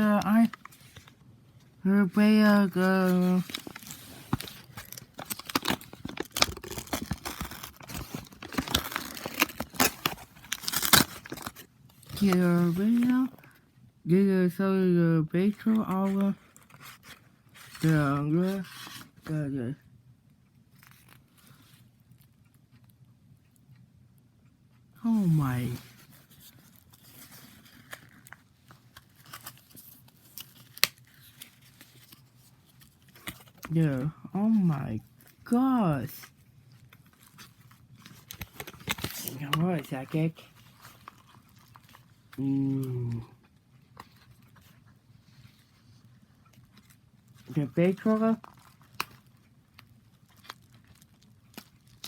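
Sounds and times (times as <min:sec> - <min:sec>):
packaging being torn and crinkled: 0:02.8 - 0:13.3, 0:25.4 - 0:33.8, 0:35.2 - 0:44.8, 0:46.3 - 0:52.0
sharp packaging click: 0:03.5 - 0:11.6.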